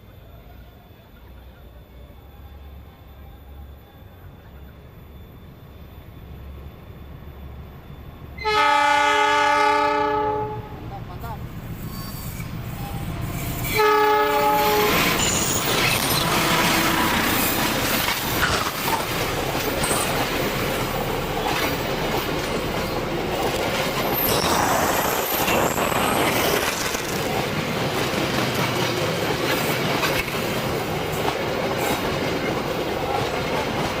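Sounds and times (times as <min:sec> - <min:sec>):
wheel squeals: 0:11.8 - 0:13.8, 0:14.6 - 0:18.8, 0:23.9 - 0:27.4
train wheels clattering: 0:13.2 - 0:34.0.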